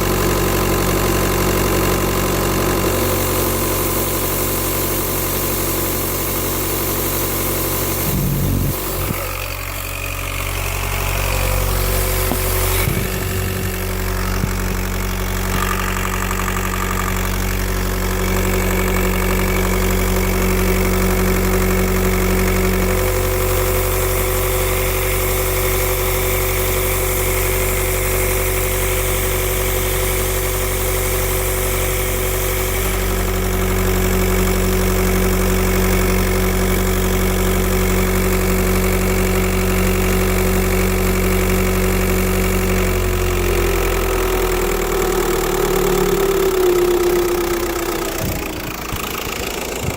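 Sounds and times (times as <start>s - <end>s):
car engine idling: 0.0s - 49.9s
hiss: 2.9s - 9.5s, 23.0s - 33.8s
low hum: 6.7s - 34.0s.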